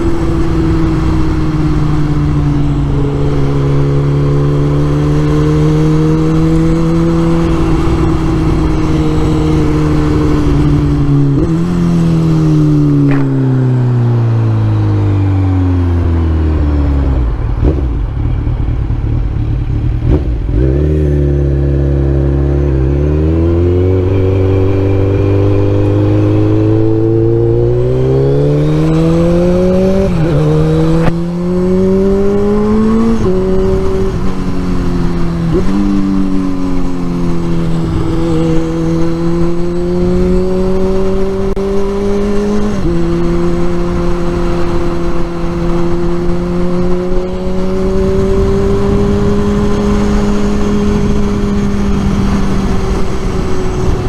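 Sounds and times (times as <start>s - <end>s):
motorcycle engine running: 16.2s - 54.0s.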